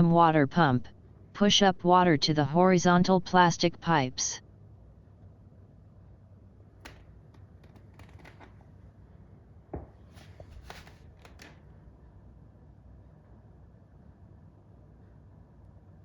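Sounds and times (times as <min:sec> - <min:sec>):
low steady hum: 0:00.0 - 0:04.4
faint clicks and taps: 0:06.8 - 0:08.7.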